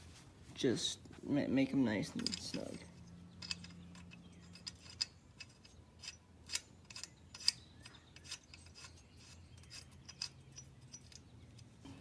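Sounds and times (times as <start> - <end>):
wrench clicking on metal: 2.2 - 11.7.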